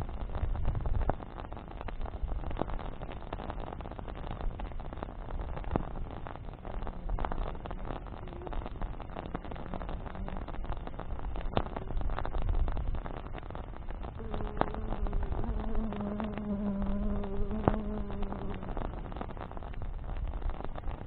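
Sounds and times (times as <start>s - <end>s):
campfire crackling and popping: 0.0s - 21.0s
flying insect buzzing: 14.2s - 19.5s.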